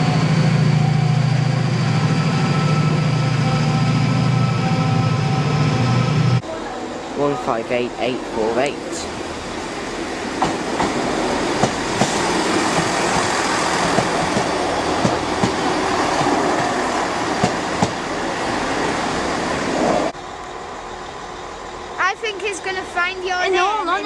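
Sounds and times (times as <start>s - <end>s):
train wheel and rail noise: 0.0s - 24.0s.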